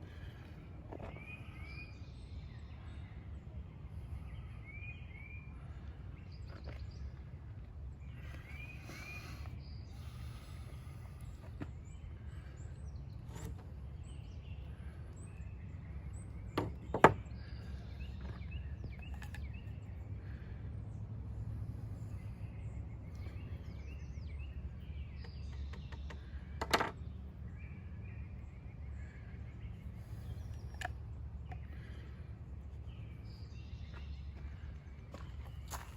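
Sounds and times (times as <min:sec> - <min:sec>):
steady low rumble: 0:00.0 - 0:25.2
faint bird chirps: 0:08.0 - 0:20.5.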